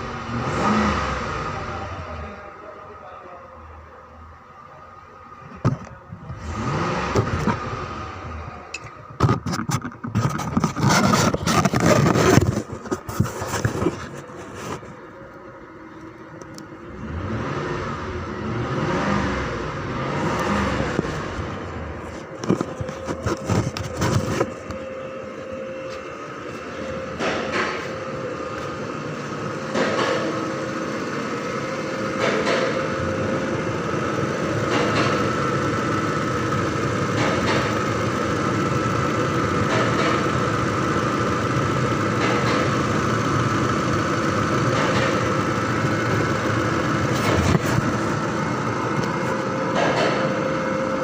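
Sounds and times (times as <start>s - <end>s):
vehicle engine running: 0.0s - 51.0s
clattering scraping noise: 9.2s - 15.0s, 22.0s - 24.8s, 47.0s - 48.2s.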